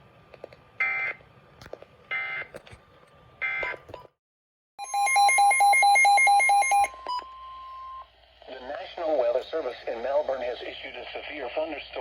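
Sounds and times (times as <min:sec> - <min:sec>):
steady high alert tone: 0:04.8 - 0:07.0.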